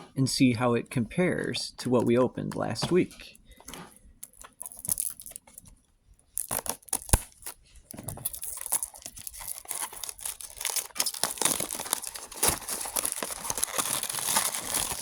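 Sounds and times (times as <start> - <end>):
packaging crinkling: 3.6 - 15.0.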